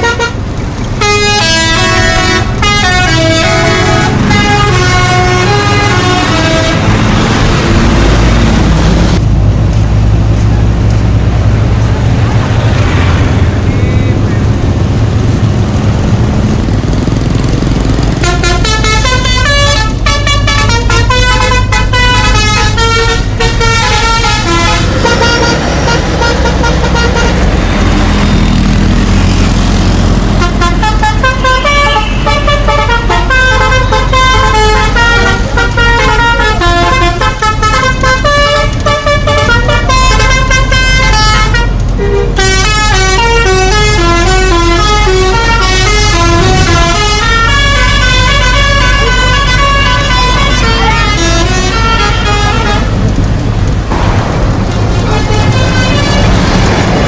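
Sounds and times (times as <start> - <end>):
bus musical horn tune: 0.0 - 9.2, 17.6 - 28.6, 30.2 - 53.3, 54.7 - 56.5
bus engine drone: 0.0 - 57.0.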